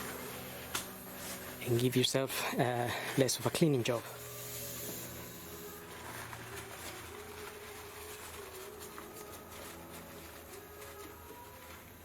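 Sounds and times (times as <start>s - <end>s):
low background hum: 0.0s - 12.0s
paper rustling and clicks: 5.9s - 12.0s.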